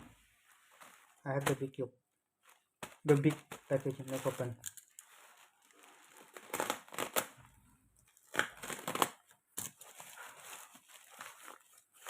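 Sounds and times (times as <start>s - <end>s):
packaging crinkling and tearing: 2.5s - 12.0s.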